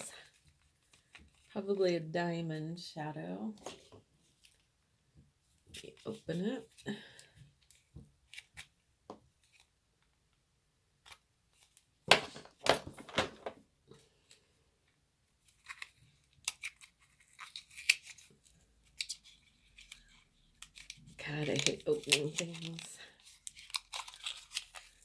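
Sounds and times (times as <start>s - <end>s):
packaging crinkles and clicks: 15.4s - 25.0s
packaging tearing: 15.6s - 18.3s, 19.0s - 25.0s.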